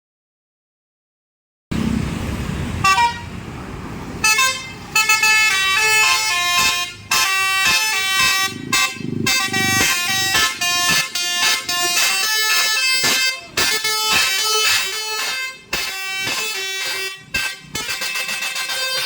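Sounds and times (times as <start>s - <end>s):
multi-tone bus horn tune: 2.7s - 3.4s, 4.2s - 19.0s.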